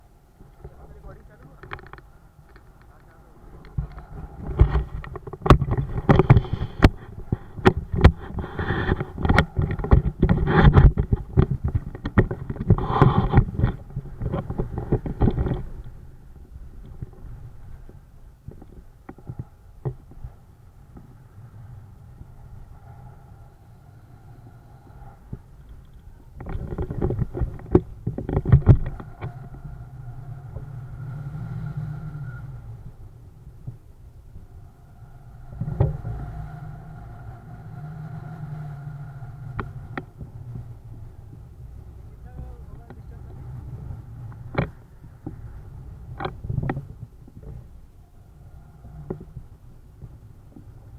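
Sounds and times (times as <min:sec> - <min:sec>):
wind buffeting microphone: 0:00.0 - 0:50.9
sharp knocks and crackles: 0:00.4 - 0:21.2, 0:25.1 - 0:31.0, 0:35.4 - 0:36.3, 0:39.2 - 0:47.8
knocks and thumps: 0:03.7 - 0:15.8.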